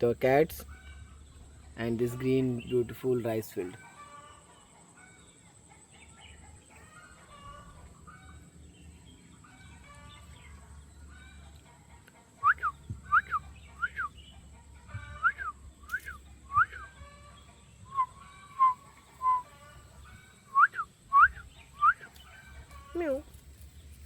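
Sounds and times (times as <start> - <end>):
faint background chirping: 0.0 - 24.0
short whistled chirps: 12.4 - 14.1, 15.2 - 16.9, 17.9 - 19.5, 20.6 - 22.1
long whistled notes: 17.9 - 19.5, 20.6 - 22.1.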